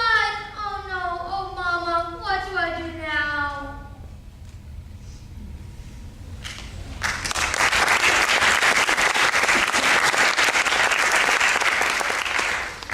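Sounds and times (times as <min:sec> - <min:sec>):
audience applause: 0:07.0 - 0:12.9.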